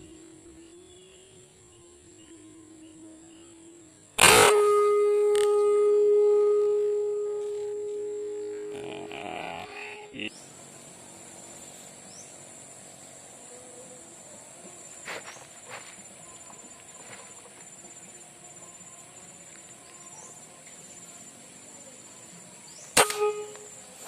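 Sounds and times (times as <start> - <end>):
insects chirring: 0.0 - 24.0
loud sharp crack: 4.2 - 6.7, 22.9 - 23.7
brief ringing tone: 4.2 - 10.0.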